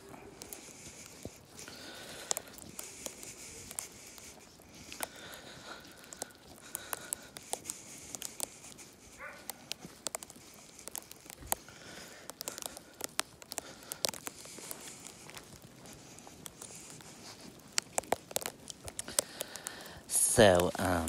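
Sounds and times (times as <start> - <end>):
footsteps crunching on snow: 0.0 - 21.0
sleet pellets pelting a coat: 0.0 - 21.0.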